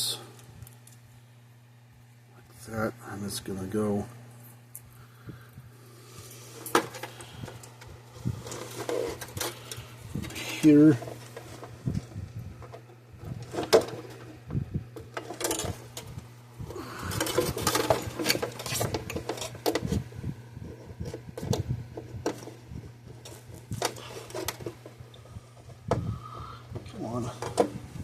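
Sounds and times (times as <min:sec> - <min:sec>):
steady low hum: 0:00.0 - 0:28.0
small metallic rattles and clicks: 0:14.9 - 0:16.3, 0:17.0 - 0:20.0.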